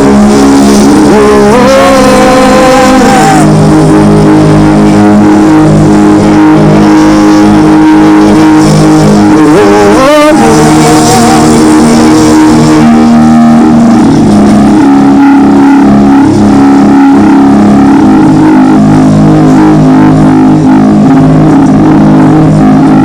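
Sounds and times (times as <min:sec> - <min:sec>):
sustained instrumental chords: 0:00.0 - 0:23.0
person singing wordlessly: 0:00.1 - 0:04.1, 0:09.2 - 0:12.9.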